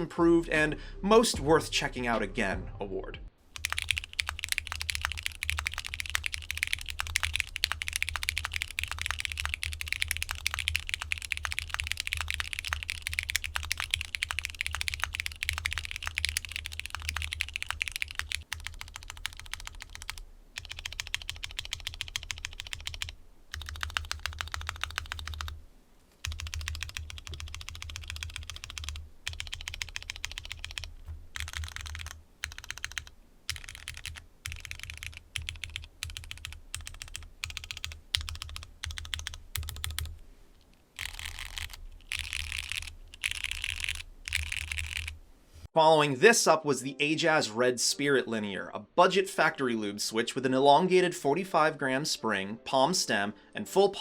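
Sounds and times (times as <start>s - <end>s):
mechanical keyboard typing: 3.5s - 25.6s, 26.2s - 40.2s, 41.0s - 45.2s.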